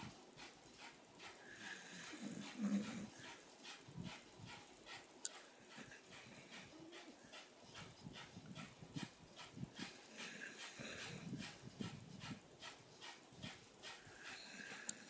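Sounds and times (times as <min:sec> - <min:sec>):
dog snoring: 0:01.4 - 0:03.2.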